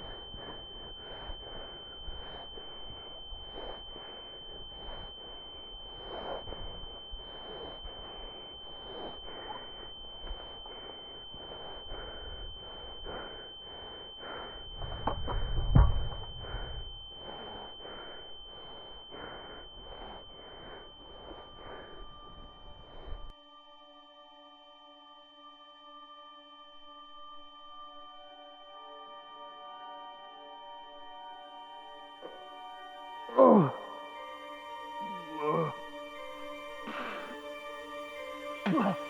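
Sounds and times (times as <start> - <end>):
high-pitched ringing tone: 0.0 - 39.0
heavy low thud: 14.9 - 16.4.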